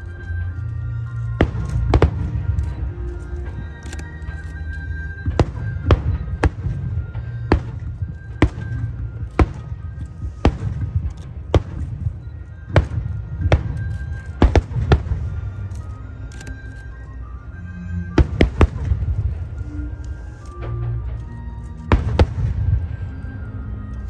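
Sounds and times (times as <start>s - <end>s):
music: 0.0s - 24.0s
fireworks bursting: 1.4s - 2.9s, 5.2s - 15.5s.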